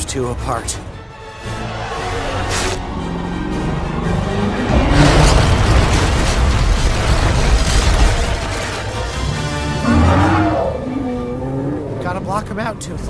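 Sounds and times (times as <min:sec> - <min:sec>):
dramatic film score: 0:00.0 - 0:13.0
rumbling explosive noise: 0:04.6 - 0:09.0.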